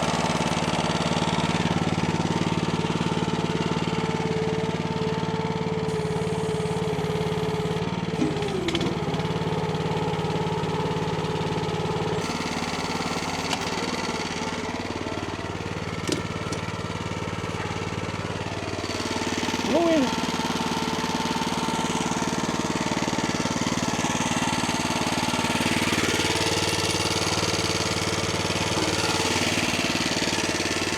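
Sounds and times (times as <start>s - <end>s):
small engine running: 0.0s - 30.9s
short knocks: 15.6s - 17.6s.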